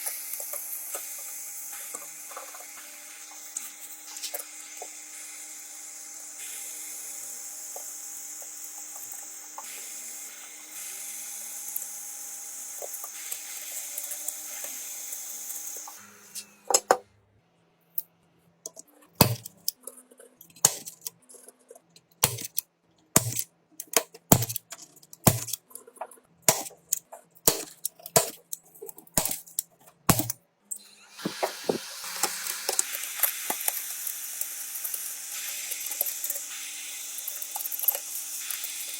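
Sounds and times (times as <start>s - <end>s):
small power tool hissing: 0.0s - 16.8s, 22.2s - 22.6s, 23.2s - 23.4s, 30.1s - 38.9s
hand tools clicking and tapping: 18.7s - 30.4s, 31.2s - 32.9s.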